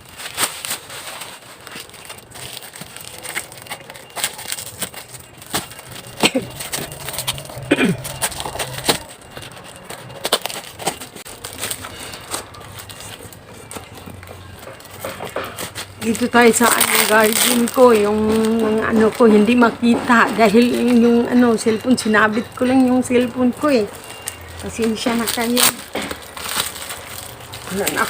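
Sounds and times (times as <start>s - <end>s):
parcel wrapping crinkling and tearing: 0.0s - 28.0s.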